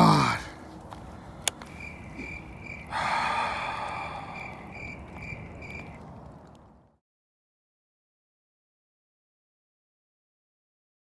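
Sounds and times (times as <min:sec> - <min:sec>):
crickets chirping: 0:01.0 - 0:06.8.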